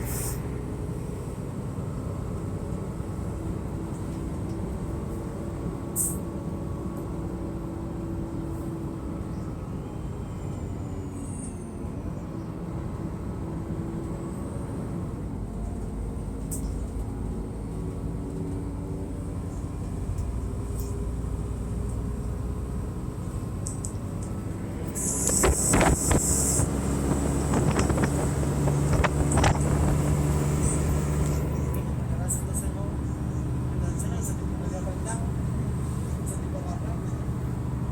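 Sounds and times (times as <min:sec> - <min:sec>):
bus diesel engine running: 0:00.0 - 0:37.9
air hiss: 0:25.0 - 0:26.8.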